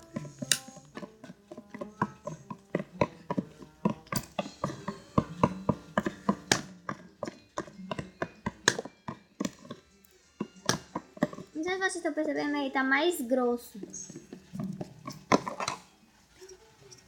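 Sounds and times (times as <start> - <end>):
spoon knocking against a bowl: 0.0 - 9.8, 10.4 - 11.6.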